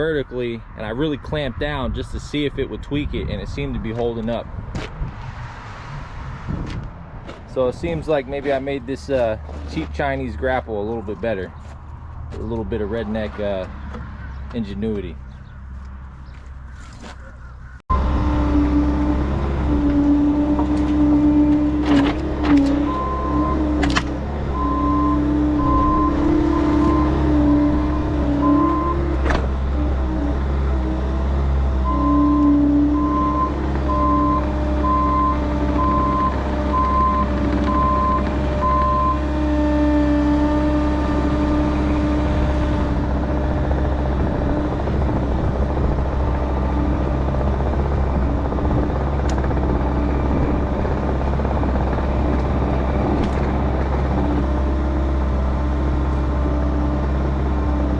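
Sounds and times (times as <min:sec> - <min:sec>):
diesel engine running: 0:07.2 - 0:57.9
backup alarm beeping: 0:22.8 - 0:23.7, 0:24.5 - 0:29.2, 0:31.8 - 0:39.2.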